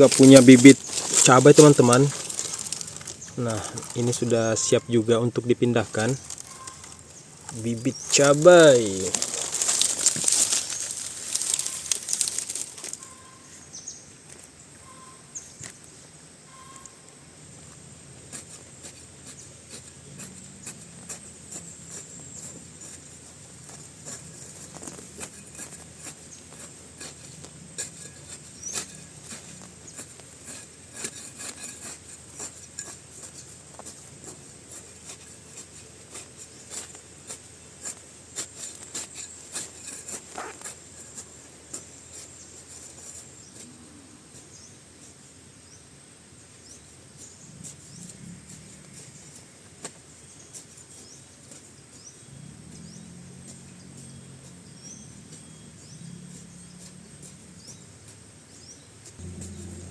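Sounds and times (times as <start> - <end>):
clicks and rustles of handling: 0.0 - 4.8, 5.8 - 13.2, 18.3 - 43.7
high insect trill: 0.0 - 59.9.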